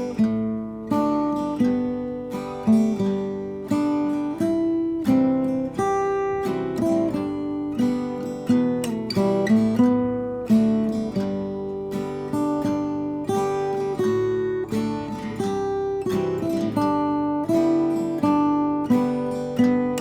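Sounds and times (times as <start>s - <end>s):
acoustic guitar picked chords: 0.0s - 20.0s.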